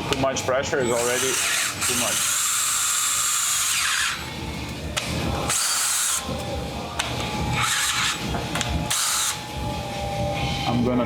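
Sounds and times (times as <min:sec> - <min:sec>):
power drill boring into metal: 0:00.8 - 0:04.3, 0:05.5 - 0:06.3.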